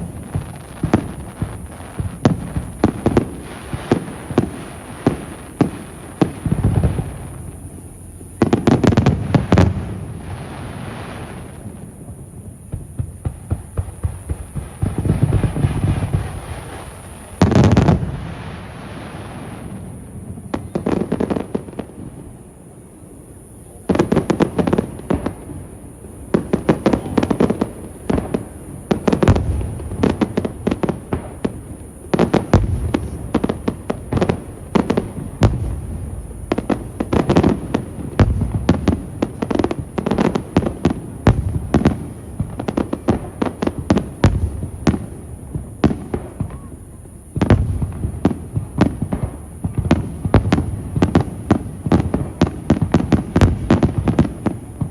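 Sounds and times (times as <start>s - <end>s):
fireworks bangs and crackles: 0.0s - 54.9s.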